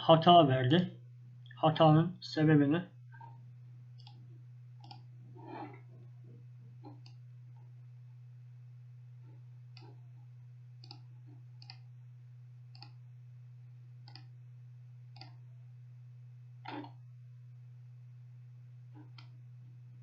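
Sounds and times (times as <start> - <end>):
steady low hum: 0.0 - 20.0
computer mouse clicking: 4.0 - 4.2, 4.8 - 5.1, 6.8 - 7.2, 10.8 - 11.9, 12.7 - 13.0, 14.0 - 14.3, 15.1 - 15.4, 16.6 - 17.0, 18.9 - 19.4.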